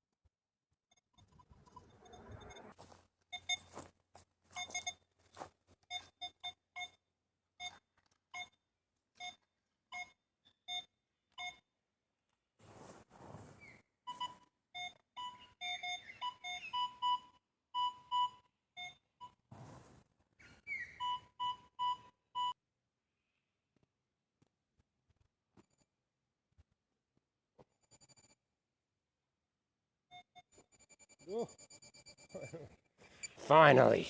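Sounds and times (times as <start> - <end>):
metal detector beeps: 0.9 - 3.8, 4.5 - 5.0, 5.9 - 7.0, 7.6 - 7.8, 8.4 - 8.6, 9.2 - 11.6, 14.1 - 19.4, 20.7 - 22.6, 30.1 - 34.0
scuffing noise: 12.6 - 13.8, 19.5 - 20.0.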